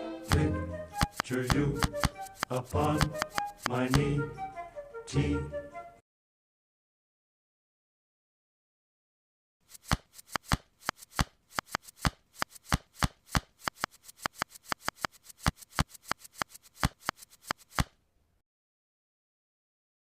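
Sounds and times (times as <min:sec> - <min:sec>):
plastic puzzle tiles clacking: 0:01.0 - 0:04.0, 0:09.8 - 0:17.9.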